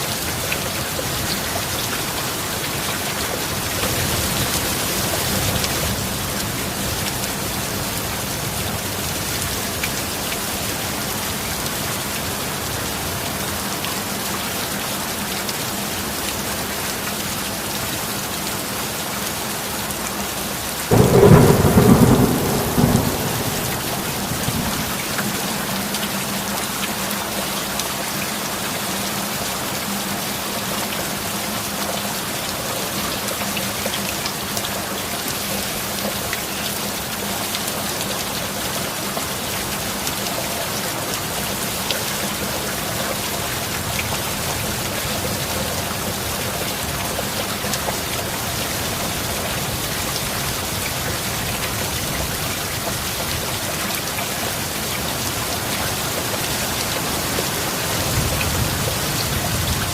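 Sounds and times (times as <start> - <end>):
heavy rain: 0.0 - 59.9
thunderclap rumbling: 20.9 - 25.8.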